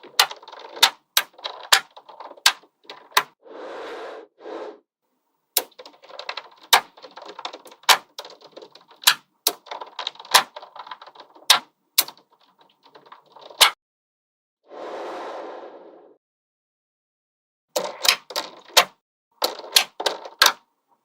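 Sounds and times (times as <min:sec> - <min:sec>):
magnetic balls clicking: 0:00.0 - 0:03.4, 0:05.6 - 0:13.8, 0:17.8 - 0:20.6.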